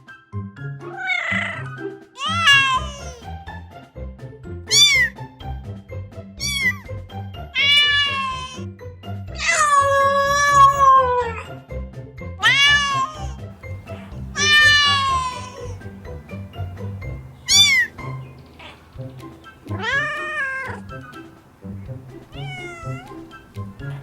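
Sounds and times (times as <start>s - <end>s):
cat meowing: 2.2s - 3.2s, 4.7s - 5.1s, 6.4s - 6.7s, 7.5s - 8.6s, 12.4s - 24.0s
background music with low beat: 13.6s - 24.0s.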